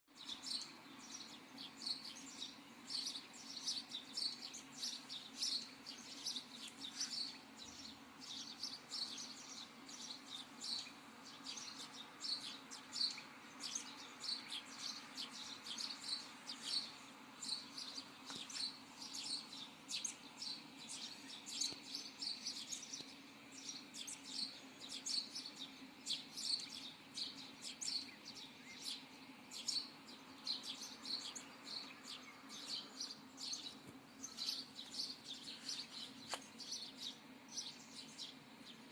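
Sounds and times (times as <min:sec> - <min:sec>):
small birds chirping: 0:00.1 - 0:38.9.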